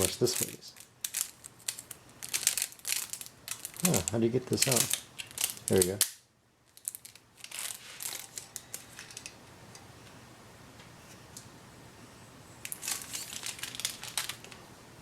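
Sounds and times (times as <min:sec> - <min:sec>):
plastic packaging crinkling: 0:00.0 - 0:06.1, 0:06.7 - 0:09.4, 0:12.6 - 0:14.6.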